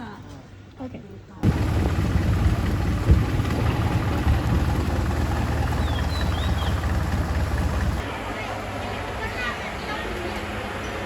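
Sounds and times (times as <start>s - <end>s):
motorboat engine droning: 1.4s - 8.0s.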